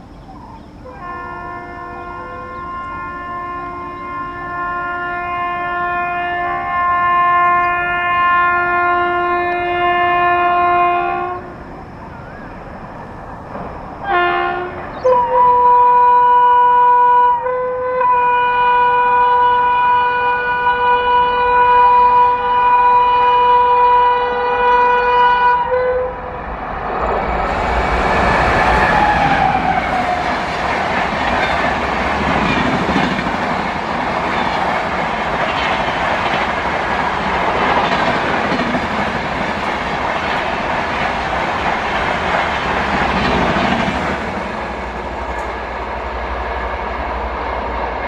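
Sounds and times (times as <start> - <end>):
locomotive air horn blasts: 0.8 - 11.6, 14.0 - 26.3.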